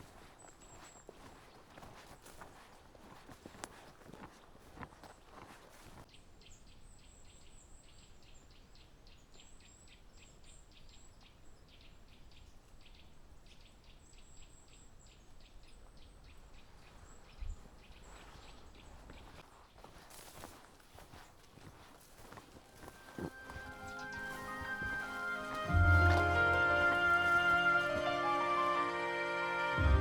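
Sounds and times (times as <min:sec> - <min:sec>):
footsteps on forest trail: 0:00.0 - 0:06.2, 0:12.9 - 0:29.2.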